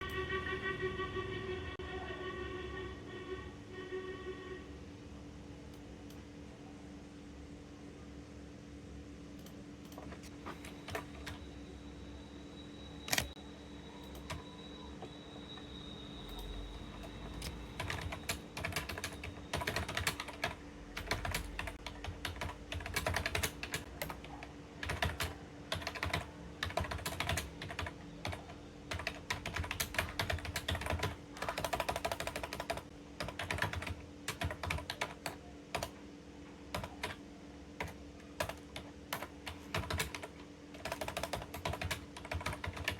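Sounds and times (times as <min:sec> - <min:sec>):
steady low hum: 0:00.0 - 0:42.9
computer keyboard typing: 0:09.4 - 0:11.4, 0:13.1 - 0:13.4, 0:14.0 - 0:14.5, 0:16.2 - 0:36.0, 0:36.7 - 0:37.2, 0:37.8 - 0:42.9.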